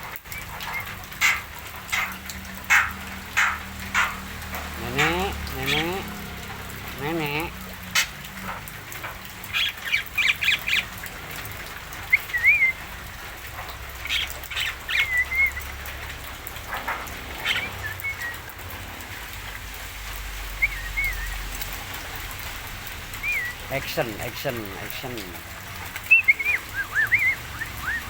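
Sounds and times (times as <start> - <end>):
myna harsh clicking chatter: 0.4 - 10.9
myna warbled whistles: 12.1 - 12.8, 20.6 - 21.4.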